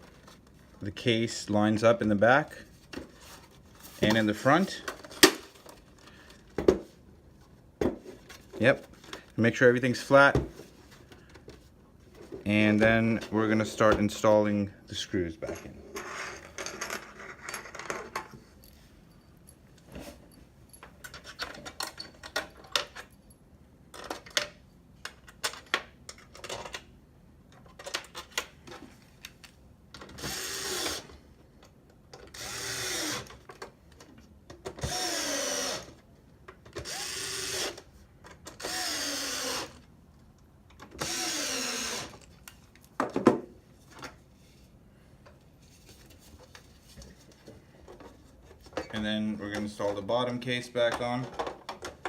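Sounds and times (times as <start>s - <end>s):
electric screwdriver driving screws: 30.2s - 31.1s, 32.3s - 33.4s, 34.8s - 36.0s, 36.8s - 37.8s, 38.5s - 39.8s, 41.0s - 42.2s.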